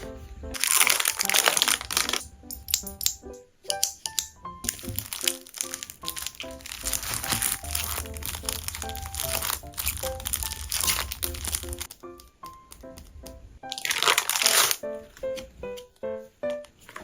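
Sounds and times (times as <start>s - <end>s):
background music with bright notes: 0.0s - 17.0s
packaging crinkling: 0.6s - 2.2s, 3.8s - 12.3s, 13.7s - 15.5s.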